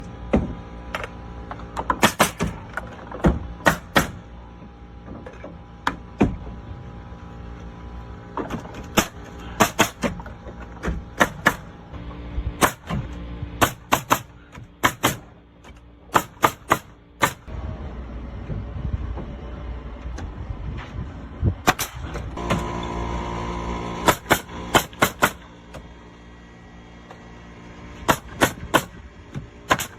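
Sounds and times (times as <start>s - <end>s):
hammering nails into wood: 1.8s - 4.2s, 8.4s - 11.7s, 12.6s - 17.5s, 24.0s - 25.9s, 28.1s - 29.9s.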